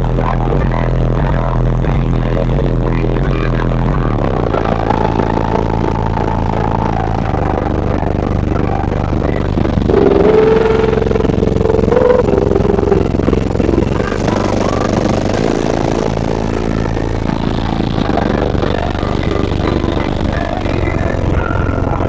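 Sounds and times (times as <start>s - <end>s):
bass-heavy music on car audio: 0.0s - 22.0s.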